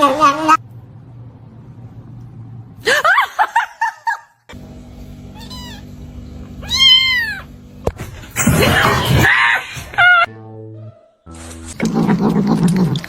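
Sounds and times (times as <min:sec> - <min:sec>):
cat meowing: 0:05.4 - 0:05.9, 0:06.6 - 0:07.5
harsh cat cry: 0:06.6 - 0:07.5.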